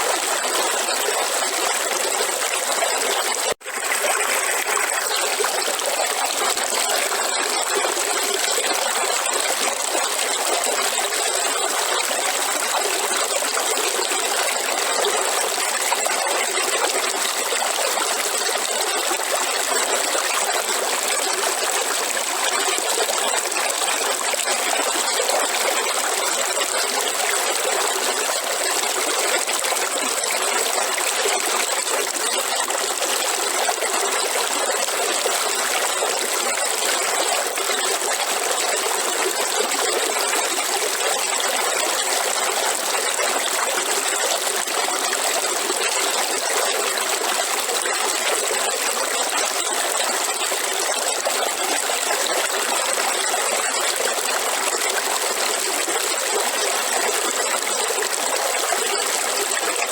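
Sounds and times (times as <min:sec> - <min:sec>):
river water over rocks: 0:00.0 - 0:59.9.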